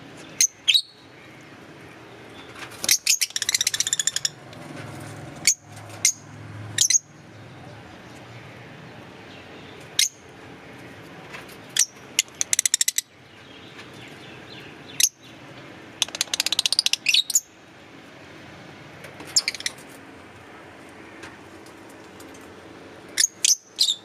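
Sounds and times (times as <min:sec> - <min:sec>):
lovebirds high-pitched chirps: 0:00.2 - 0:01.1, 0:02.3 - 0:04.4, 0:05.4 - 0:07.2, 0:09.3 - 0:10.3, 0:11.6 - 0:15.4, 0:16.0 - 0:17.5, 0:19.3 - 0:19.9, 0:23.1 - 0:24.0.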